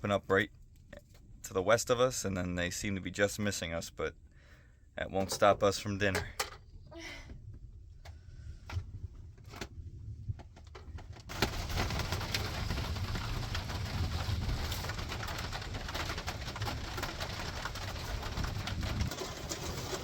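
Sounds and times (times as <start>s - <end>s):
hail pattering: 10.7s - 20.0s.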